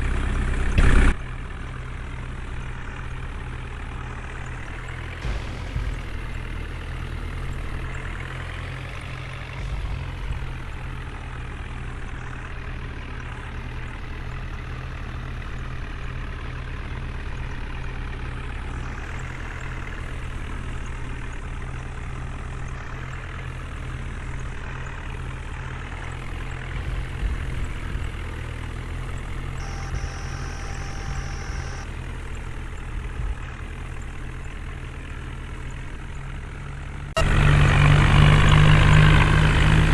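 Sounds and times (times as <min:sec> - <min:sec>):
backhoe diesel engine under load: 0:00.0 - 0:39.9
tractor engines idling: 0:00.0 - 0:39.9
steady high tone: 0:29.6 - 0:31.9.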